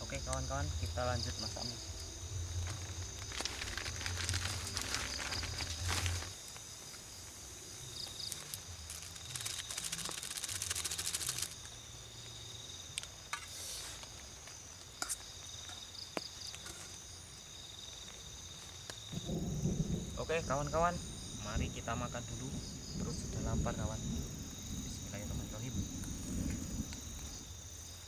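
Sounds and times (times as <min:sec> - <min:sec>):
crickets and insects trilling: 0:00.0 - 0:28.0
fine crackling: 0:02.5 - 0:07.0, 0:08.0 - 0:11.7.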